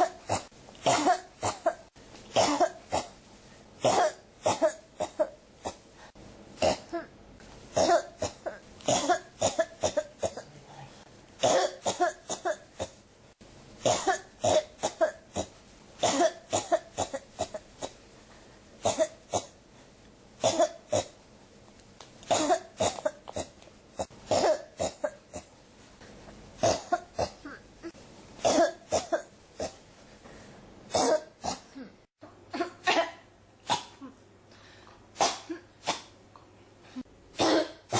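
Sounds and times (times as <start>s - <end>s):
person coughing: 0.0s - 3.2s, 3.8s - 5.9s, 6.6s - 7.1s, 7.8s - 10.6s, 11.4s - 13.0s, 13.8s - 18.0s, 18.8s - 19.5s, 20.4s - 21.1s, 22.3s - 25.5s, 26.6s - 29.8s, 30.9s - 34.2s, 35.2s - 36.1s, 36.9s - 37.9s.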